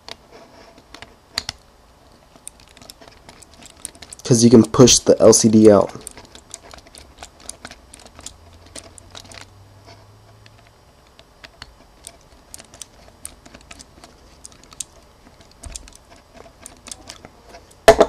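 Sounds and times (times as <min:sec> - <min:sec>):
small screwdriver clicks and taps: 0:10.4 - 0:17.3.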